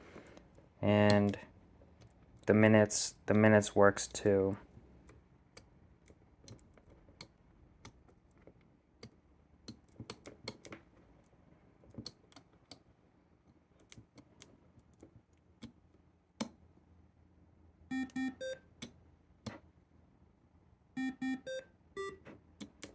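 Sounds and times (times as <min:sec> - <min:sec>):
electronic beeps from clock: 0:17.9 - 0:18.6, 0:21.0 - 0:22.2.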